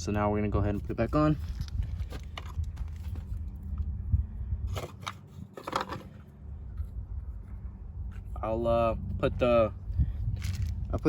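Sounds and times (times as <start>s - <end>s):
steady low hum: 0.0s - 11.0s
scraping rustles: 0.7s - 3.8s.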